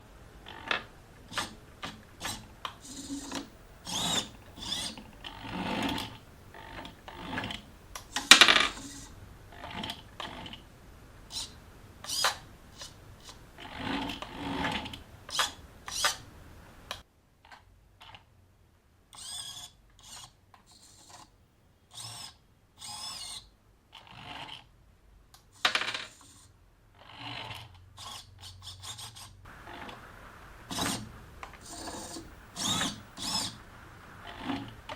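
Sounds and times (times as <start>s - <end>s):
plastic parts clicking and knocking: 0.5s - 10.6s, 25.4s - 26.4s.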